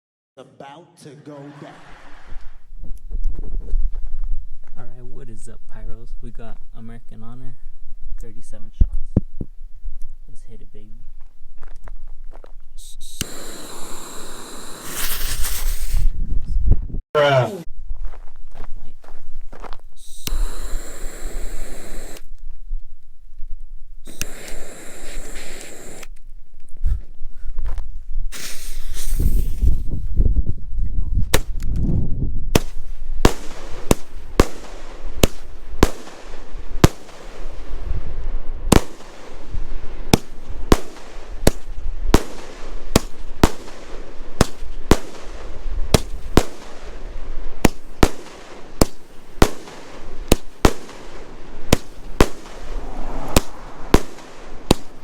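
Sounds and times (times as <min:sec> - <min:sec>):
rough outdoor noise: 0:01.8 - 0:55.0
fireworks reports echoing: 0:12.8 - 0:15.8, 0:20.0 - 0:22.2.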